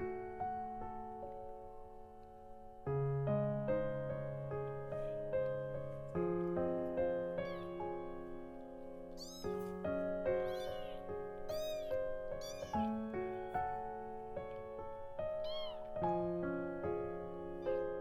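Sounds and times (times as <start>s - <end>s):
soft piano music: 0.0s - 18.0s
kitten mewing: 7.4s - 8.1s, 9.1s - 13.6s, 15.4s - 16.0s.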